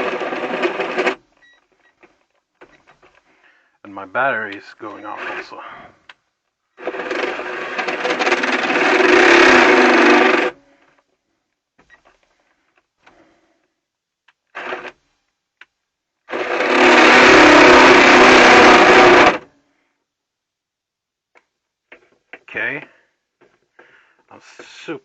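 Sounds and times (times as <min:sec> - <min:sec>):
cordless drill boring into metal: 0:00.0 - 0:01.2, 0:06.8 - 0:10.6, 0:14.6 - 0:15.0, 0:16.3 - 0:19.4.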